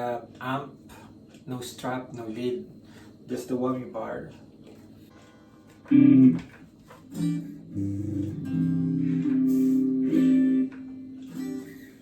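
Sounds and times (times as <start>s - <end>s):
electric guitar chords strummed: 5.1s - 12.0s.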